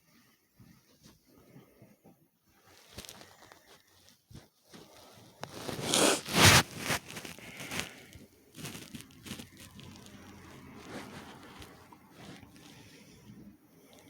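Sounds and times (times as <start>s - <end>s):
light rustling: 2.6s - 13.0s
congested nose sniffing: 5.4s - 8.1s.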